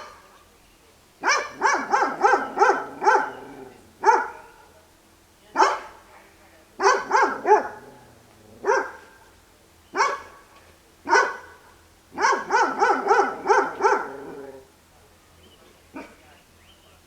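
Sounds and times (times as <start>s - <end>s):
dog barking: 1.2s - 4.8s, 5.6s - 6.0s, 6.8s - 9.3s, 9.9s - 10.5s, 11.1s - 11.6s, 12.2s - 14.6s, 16.0s - 16.2s.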